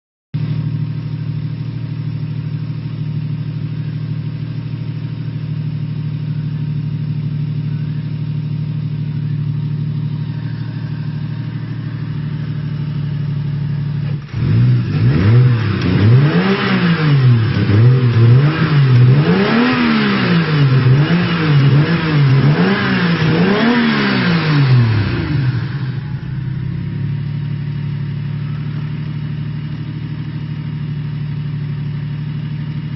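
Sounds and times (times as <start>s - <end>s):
car engine idling: 0.4s - 32.9s
engine revving: 8.8s - 30.8s.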